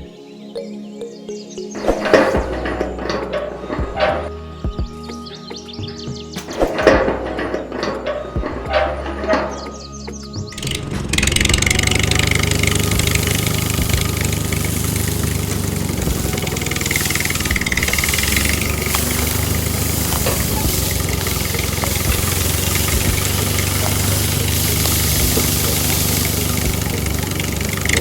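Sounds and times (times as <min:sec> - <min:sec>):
engine idling: 0:10.5 - 0:28.0.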